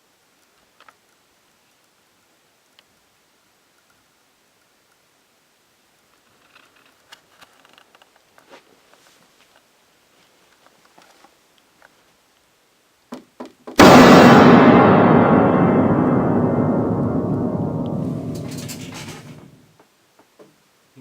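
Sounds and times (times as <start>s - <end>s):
faint clicks and rustling: 0.3s - 3.1s, 3.7s - 5.1s, 6.0s - 12.5s
dramatic music hit ringing: 13.8s - 19.4s.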